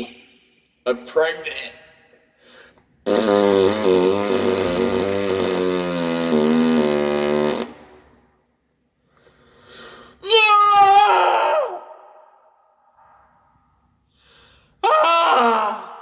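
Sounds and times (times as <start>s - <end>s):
loud fart noise: 3.0s - 8.2s
man yelling: 10.2s - 11.6s.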